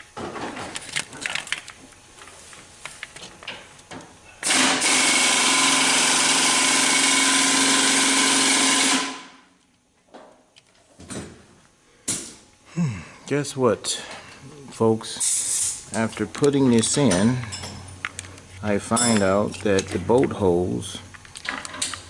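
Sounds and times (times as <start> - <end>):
power tool running: 4.4 - 9.4.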